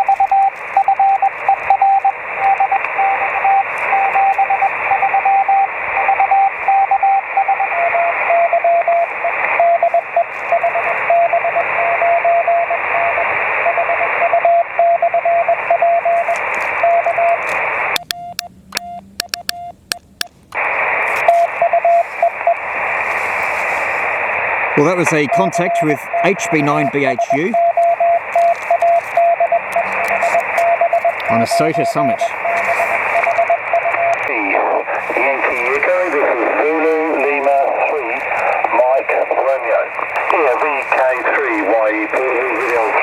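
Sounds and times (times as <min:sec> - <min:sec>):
morse code tone: 0:00.0 - 0:12.8, 0:13.7 - 0:20.0, 0:24.8 - 0:34.2
radio band hiss: 0:00.0 - 0:14.4, 0:15.3 - 0:18.0, 0:20.6 - 0:43.0
sharp clicks: 0:17.9 - 0:20.6.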